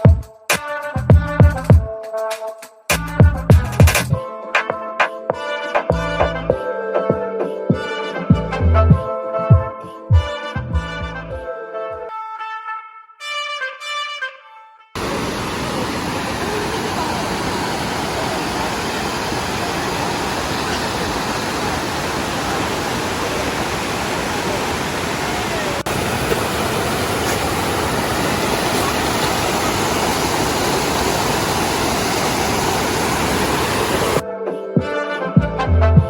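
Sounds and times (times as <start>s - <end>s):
rushing water: 15.0s - 34.2s.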